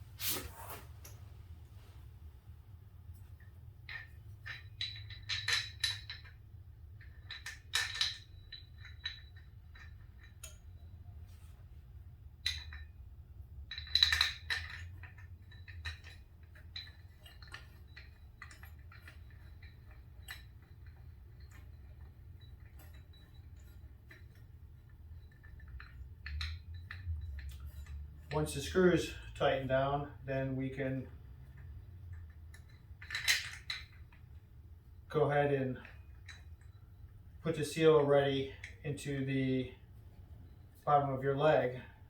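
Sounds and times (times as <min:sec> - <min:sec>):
low steady hum: 0:00.0 - 0:42.0
metal tools clinking and clattering: 0:13.6 - 0:30.1.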